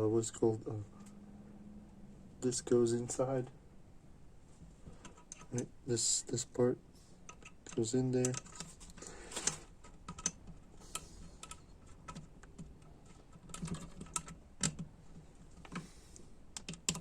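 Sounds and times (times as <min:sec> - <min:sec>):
small metal parts clicking: 0:05.0 - 0:05.6, 0:07.3 - 0:14.8.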